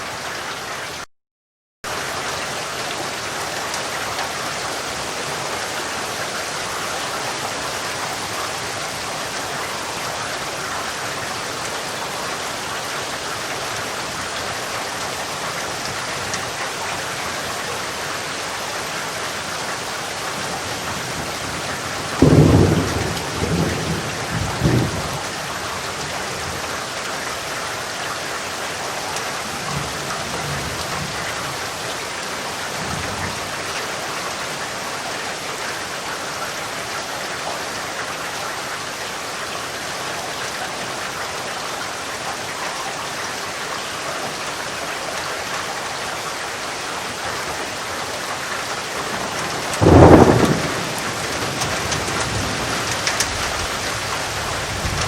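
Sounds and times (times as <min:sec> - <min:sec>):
steady rain falling: 0:00.0 - 0:01.1, 0:01.9 - 0:55.0
low rumble of thunder: 0:20.8 - 0:26.6, 0:49.0 - 0:55.0.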